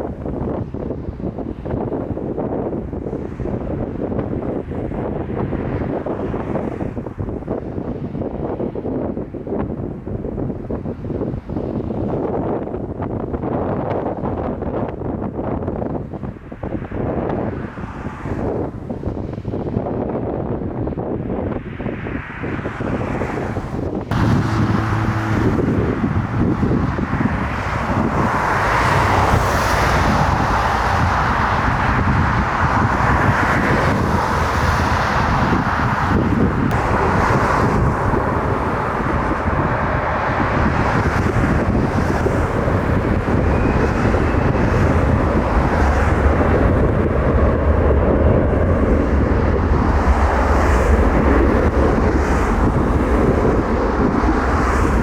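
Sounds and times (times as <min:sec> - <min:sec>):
wind buffeting microphone: 0:00.0 - 0:55.0
jet engines running: 0:23.3 - 0:55.0.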